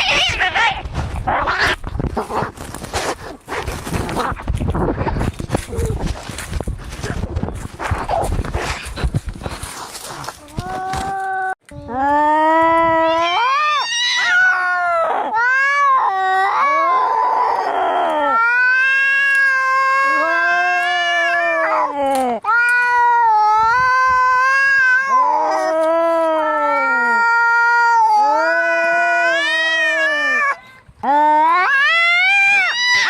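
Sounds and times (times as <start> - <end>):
cats yowling: 0.0 - 0.8, 13.0 - 21.9, 22.5 - 30.6, 31.4 - 33.0.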